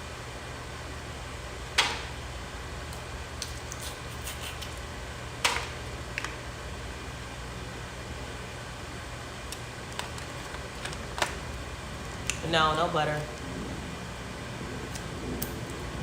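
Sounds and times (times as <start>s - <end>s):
crab shells cracking: 9.5s - 11.6s.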